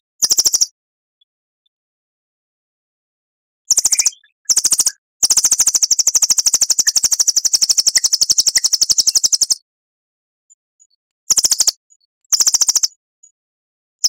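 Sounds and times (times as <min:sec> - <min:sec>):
songbird rapid trill: 0:00.2 - 0:00.8, 0:03.7 - 0:09.7, 0:11.3 - 0:13.0.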